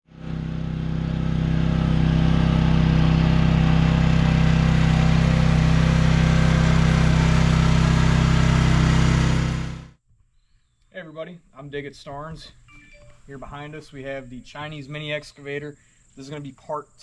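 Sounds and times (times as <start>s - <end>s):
mini excavator engine running: 0.1s - 9.9s.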